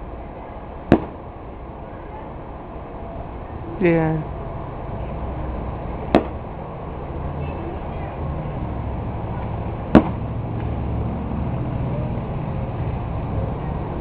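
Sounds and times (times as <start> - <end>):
low background rumble: 0.0 - 14.0
firework bang: 0.9 - 1.2, 6.1 - 6.4, 9.9 - 10.3.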